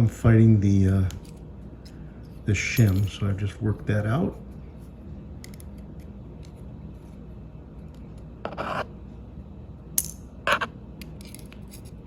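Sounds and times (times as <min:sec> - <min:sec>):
padlock parts scraping: 0:10.5 - 0:12.0.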